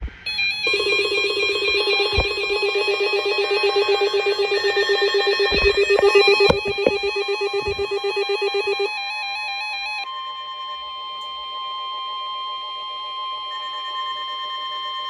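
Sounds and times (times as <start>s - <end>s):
two-pitch pulsing alarm tone: 0.2s - 11.0s
dull knocks: 0.7s - 8.1s.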